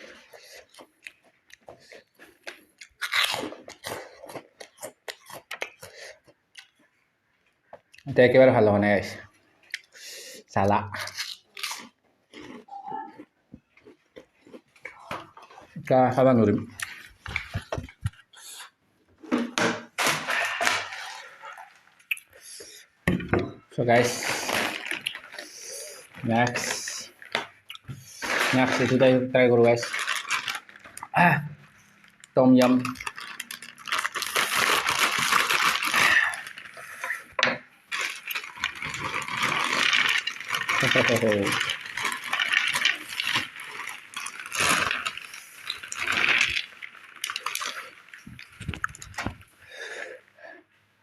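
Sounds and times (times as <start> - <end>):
chips crunching: 0.0 - 6.7, 11.0 - 15.4, 23.9 - 50.0.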